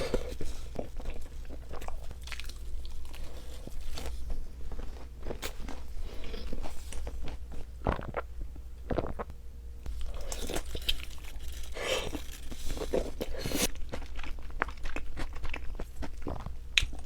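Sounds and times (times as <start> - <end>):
biting and chewing pizza: 9.9 - 17.0.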